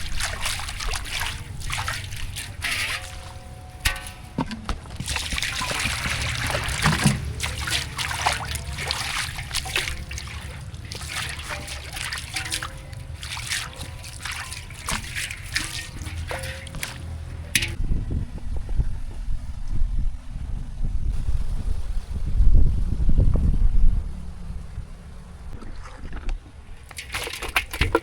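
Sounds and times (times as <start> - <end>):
water splashing in a container: 0.0 - 17.8, 25.5 - 28.0.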